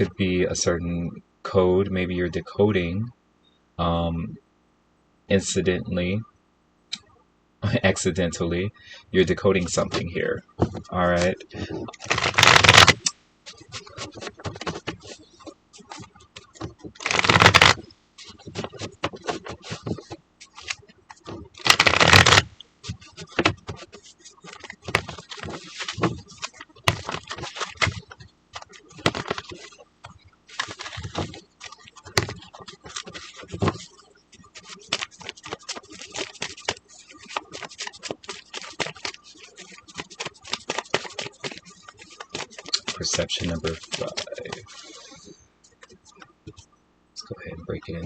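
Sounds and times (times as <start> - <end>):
cards riffle shuffling: 9.6 - 45.3.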